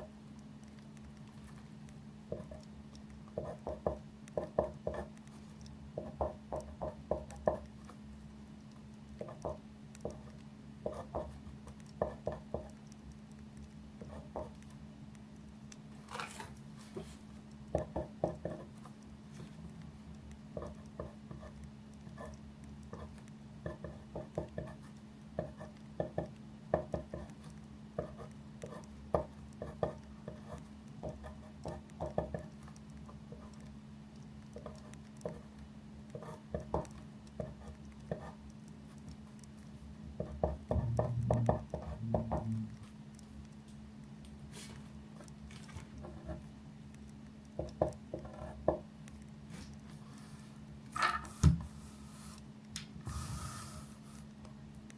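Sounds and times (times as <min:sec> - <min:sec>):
pen writing on paper: 0:03.4 - 0:05.2, 0:09.2 - 0:12.7, 0:14.0 - 0:14.5, 0:17.8 - 0:18.9, 0:20.6 - 0:26.2, 0:26.8 - 0:32.5, 0:34.6 - 0:35.5, 0:36.1 - 0:39.0, 0:40.2 - 0:42.8, 0:48.2 - 0:48.6
low hum: 0:39.4 - 0:43.5
paper rustle: 0:44.5 - 0:44.9.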